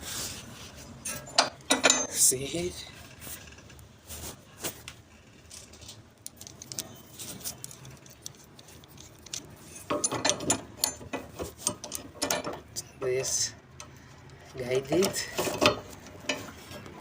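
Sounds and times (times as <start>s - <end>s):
metal tools clicking and clinking: 1.1s - 2.3s, 7.6s - 13.9s.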